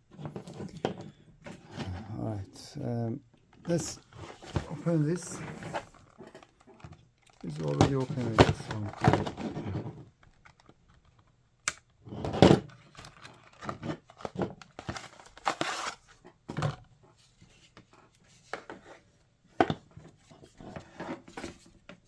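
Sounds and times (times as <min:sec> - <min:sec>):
packaging rustling and tearing: 0:04.6 - 0:11.3, 0:12.8 - 0:16.2.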